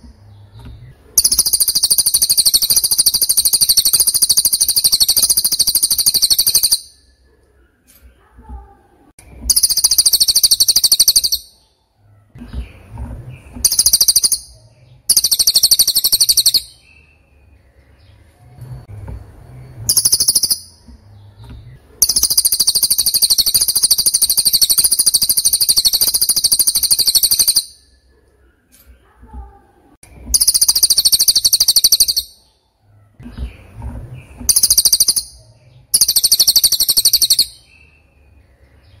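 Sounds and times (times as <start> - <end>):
bird singing high trills: 1.2 - 7.2, 9.4 - 11.7, 13.6 - 18.2, 19.7 - 20.9, 22.0 - 28.1, 30.3 - 32.6, 34.4 - 39.0.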